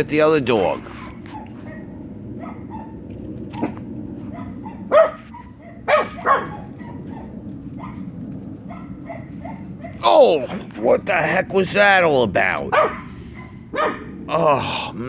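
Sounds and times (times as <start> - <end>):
low rumble: 0.4 - 15.0
dogs barking: 0.8 - 10.0, 12.6 - 14.3.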